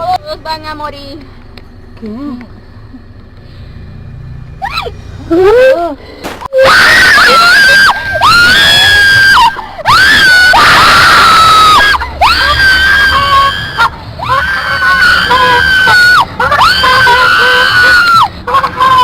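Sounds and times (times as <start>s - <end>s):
person screaming: 6.5s - 19.0s.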